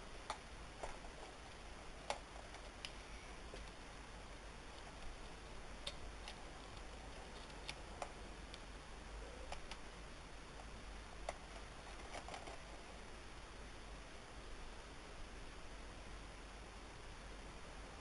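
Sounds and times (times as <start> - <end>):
faint hiss: 0.0 - 18.0
small parts and tools clicking: 4.7 - 8.7, 11.2 - 12.8.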